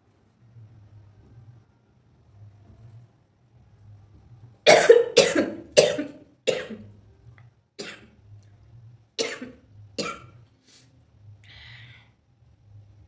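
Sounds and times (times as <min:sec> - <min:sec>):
person coughing: 0:04.7 - 0:06.8, 0:09.2 - 0:10.3.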